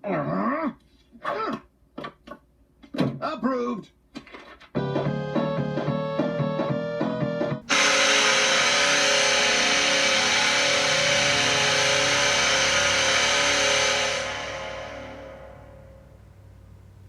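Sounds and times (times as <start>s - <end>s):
rhythmic pitched music: 4.8s - 15.9s
goal horn blast: 7.7s - 16.3s.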